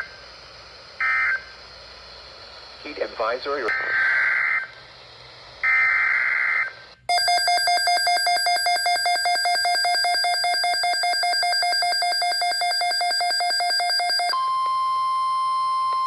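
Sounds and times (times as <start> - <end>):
rapid alarm beeps: 7.1 - 16.0.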